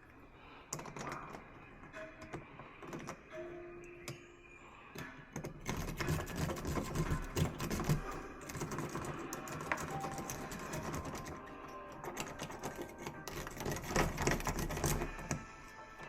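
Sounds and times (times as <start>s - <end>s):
lock tools clicking and rattling: 5.0s - 15.8s.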